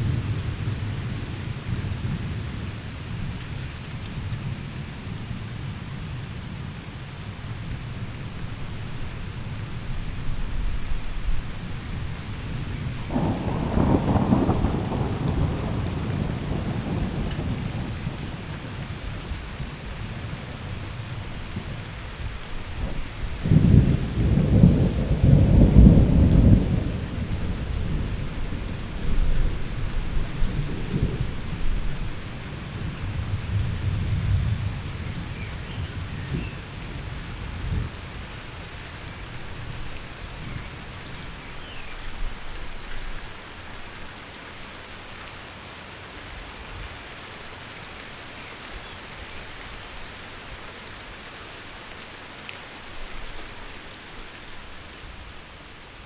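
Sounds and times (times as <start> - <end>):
heavy rain falling: 0.0 - 56.0
rolling thunder: 12.8 - 19.2, 22.8 - 38.0.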